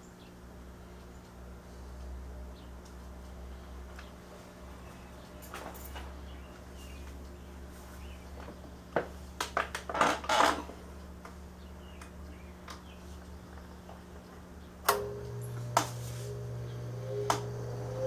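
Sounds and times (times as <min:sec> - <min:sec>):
fan motor humming: 0:10.6 - 0:18.0.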